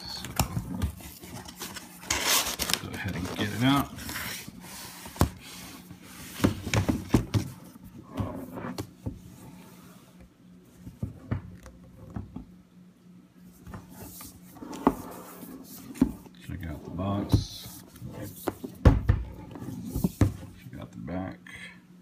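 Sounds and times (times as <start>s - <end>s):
packaging knocks and rubbing: 0.4s - 4.3s.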